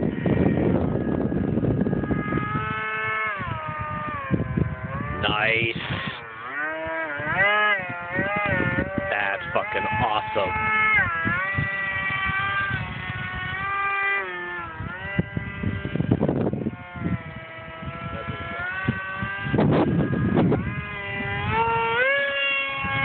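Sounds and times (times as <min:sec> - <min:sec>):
model jet propeller whining: 0:00.0 - 0:23.0
wind buffeting microphone: 0:00.0 - 0:23.0.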